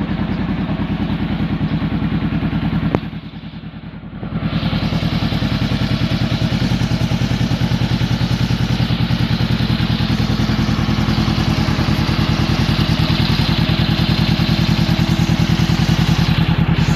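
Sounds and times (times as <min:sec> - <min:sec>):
engine idling through exhaust: 0:00.0 - 0:16.9.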